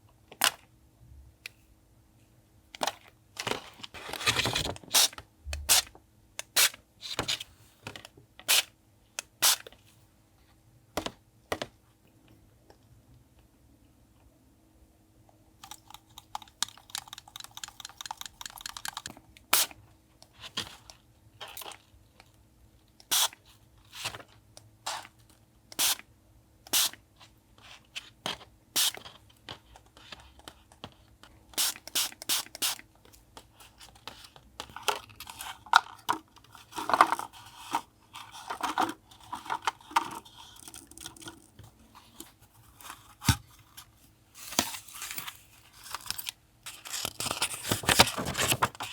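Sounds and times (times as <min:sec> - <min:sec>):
paper tearing and crinkling: 0:03.8 - 0:05.1, 0:46.7 - 0:48.9.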